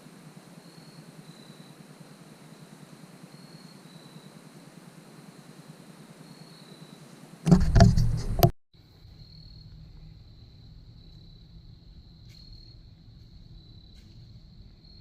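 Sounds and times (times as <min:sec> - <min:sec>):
insects chirring: 0:00.1 - 0:07.6, 0:08.8 - 0:15.0
knocks and rustling: 0:07.5 - 0:08.5.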